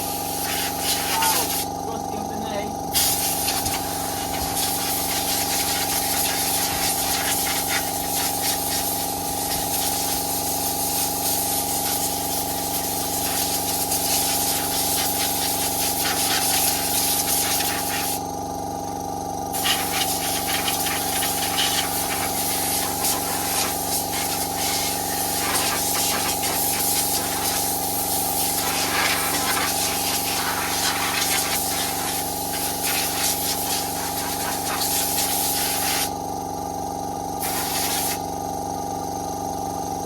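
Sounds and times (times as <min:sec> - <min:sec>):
cleaning jet hissing: 0:00.0 - 0:10.3, 0:19.6 - 0:36.1, 0:37.4 - 0:38.2
electric motor hum: 0:00.0 - 0:10.3.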